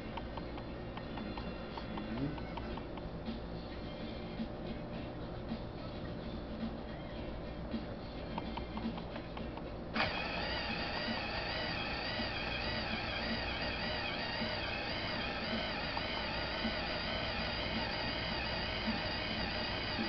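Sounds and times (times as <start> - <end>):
motor whine: 5.6 - 20.0.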